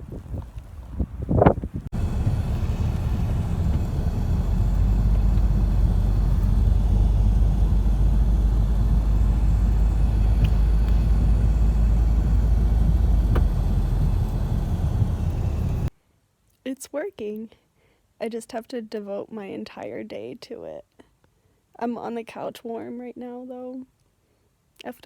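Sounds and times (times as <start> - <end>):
vehicle driving through snow: 0.0 - 15.9
faint clicks: 2.0 - 15.9.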